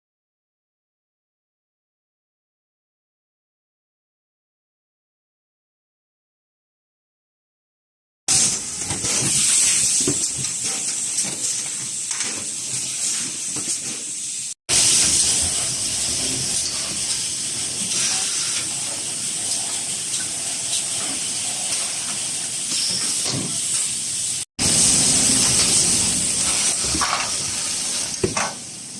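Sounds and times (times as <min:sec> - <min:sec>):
machinery hissing like compressed air: 0:08.3 - 0:28.9.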